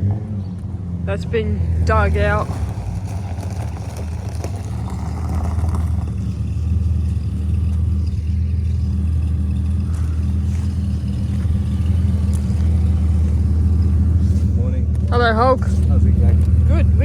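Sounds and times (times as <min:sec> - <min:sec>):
car engine low drone: 0:00.0 - 0:17.0.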